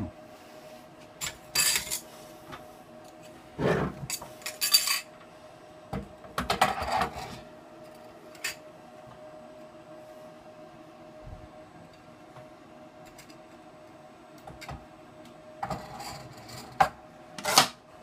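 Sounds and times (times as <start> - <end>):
faint steady hum: 0.0 - 18.0.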